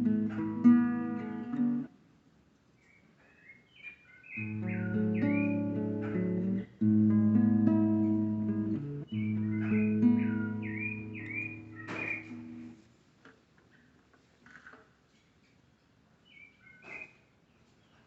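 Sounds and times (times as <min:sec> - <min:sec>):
acoustic guitar chords: 0:00.0 - 0:01.9, 0:04.4 - 0:12.8
bird calling with swooping notes: 0:04.4 - 0:05.9, 0:09.1 - 0:12.8.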